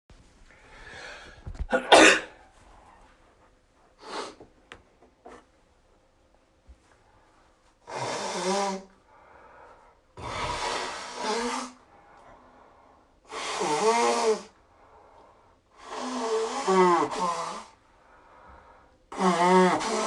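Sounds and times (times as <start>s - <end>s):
person blowing nose: 4.0s - 4.4s, 7.9s - 8.9s, 10.2s - 11.8s, 13.3s - 14.6s, 15.8s - 17.8s, 19.1s - 20.0s.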